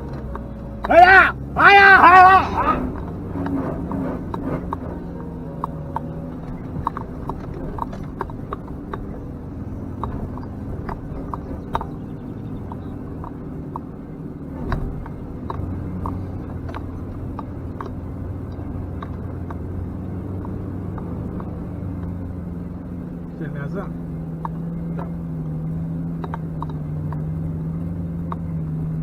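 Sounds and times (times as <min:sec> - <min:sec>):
off-road vehicle engine: 0:00.0 - 0:29.0
sharp clicks and knocks: 0:02.8 - 0:22.2, 0:24.3 - 0:27.3.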